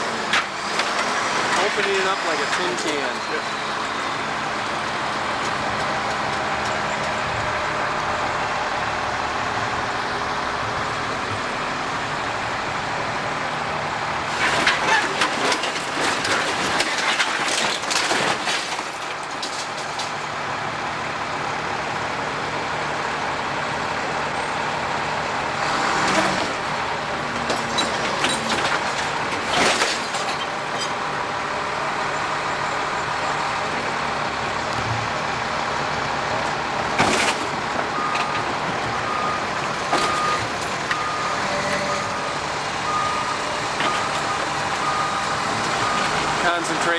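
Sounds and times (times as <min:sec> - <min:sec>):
diesel engine running: 0:00.0 - 0:46.9
debris crashing and crunching: 0:14.2 - 0:20.4, 0:25.8 - 0:31.1, 0:36.6 - 0:41.0
reversing beeper: 0:39.0 - 0:46.6.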